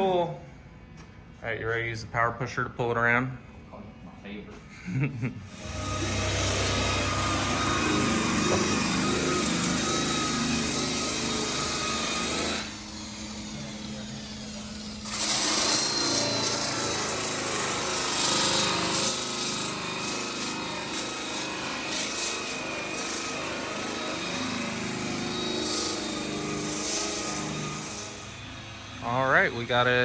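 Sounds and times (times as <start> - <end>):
electric motor whine: 5.5 - 29.0.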